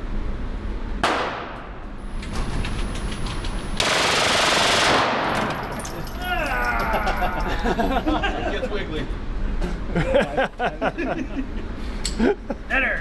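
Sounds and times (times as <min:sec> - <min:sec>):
pistol gunshots: 0:01.0 - 0:01.8, 0:03.8 - 0:05.6.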